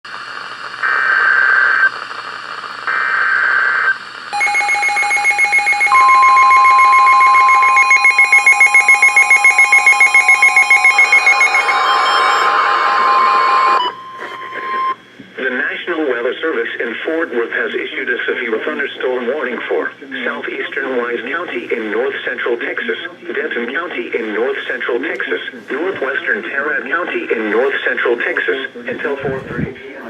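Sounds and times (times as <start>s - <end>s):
electronic alert tones: 4.4s - 15.0s
steady warning alarm tone: 4.4s - 15.0s.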